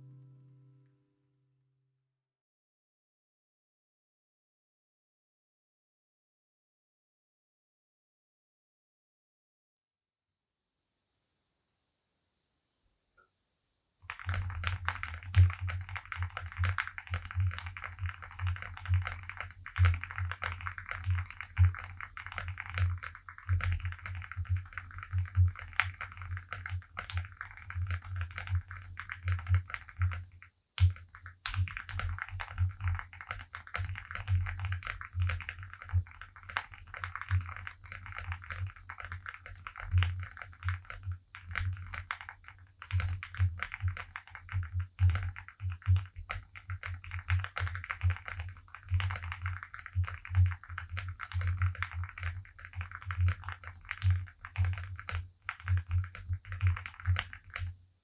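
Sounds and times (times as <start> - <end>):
keyboard keystroke clacks: 30.8 - 57.7.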